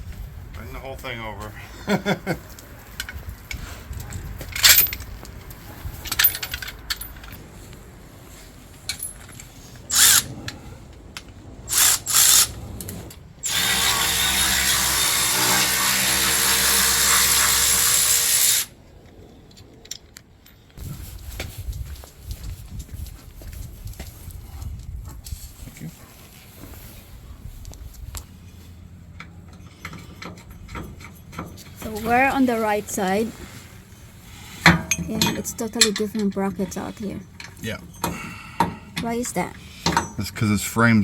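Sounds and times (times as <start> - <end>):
tools clinking: 4.5 - 5.1, 6.0 - 7.4, 8.8 - 10.3, 34.6 - 40.2
power drill running: 11.7 - 12.6, 13.4 - 18.7.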